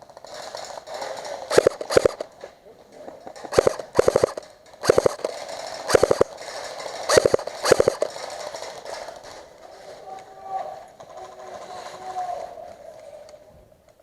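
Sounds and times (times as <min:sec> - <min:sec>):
airsoft rifle bursts: 0:01.5 - 0:02.3, 0:03.5 - 0:08.4.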